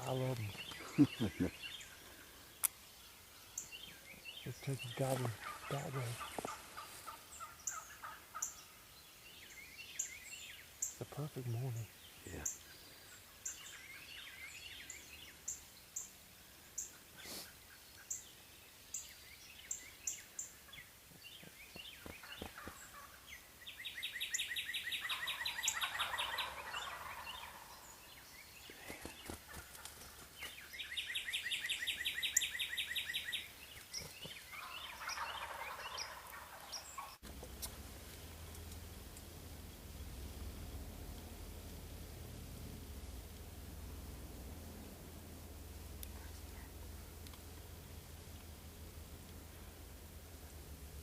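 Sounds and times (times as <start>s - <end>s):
songbirds chirping: 0.0s - 51.0s
wild turkey gobbling: 4.7s - 8.9s, 22.1s - 28.3s, 29.1s - 50.5s.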